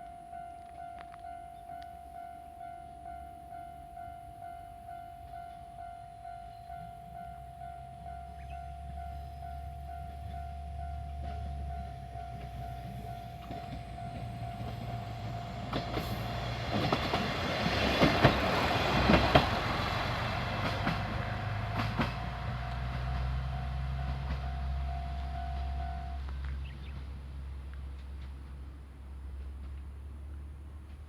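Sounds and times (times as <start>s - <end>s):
level crossing alarm ringing: 0.0s - 16.6s, 21.4s - 26.2s
low engine hum: 6.4s - 31.0s
train wheels clicking over rail joints: 8.3s - 27.2s.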